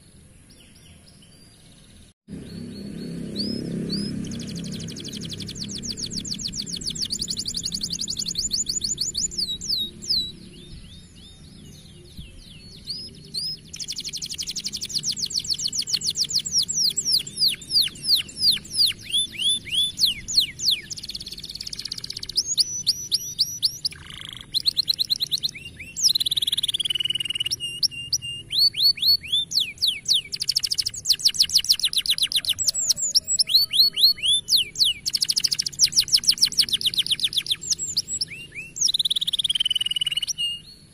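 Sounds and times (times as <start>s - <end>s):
canary singing trills: 0.0s - 40.9s.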